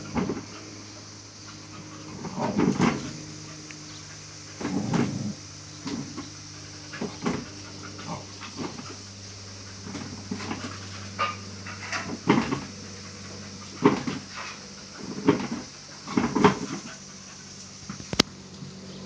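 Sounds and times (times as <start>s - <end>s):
steady low hum: 0.0s - 19.0s
puppy barking and growling: 4.5s - 6.2s.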